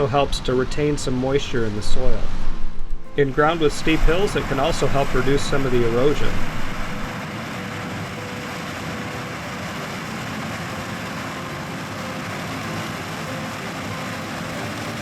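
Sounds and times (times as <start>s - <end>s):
combine harvester droning: 0.0s - 15.0s
faint steady whine: 0.0s - 15.0s.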